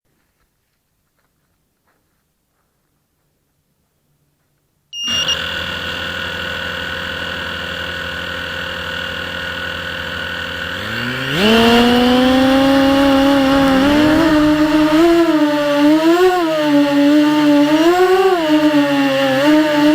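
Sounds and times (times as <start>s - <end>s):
quadcopter motors whining: 5.0s - 19.9s.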